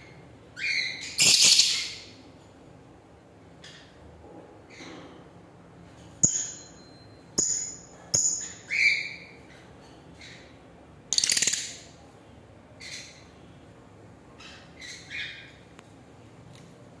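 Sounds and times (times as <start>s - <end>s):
birds chirping shrilly: 0.6s - 2.2s.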